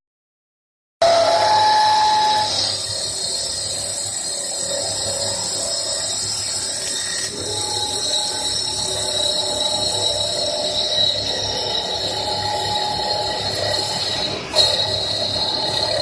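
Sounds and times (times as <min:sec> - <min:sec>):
brief machine whine: 0:01.0 - 0:16.0
cutter shaving spinning wood: 0:01.0 - 0:16.0
lathe motor hum: 0:01.0 - 0:16.0.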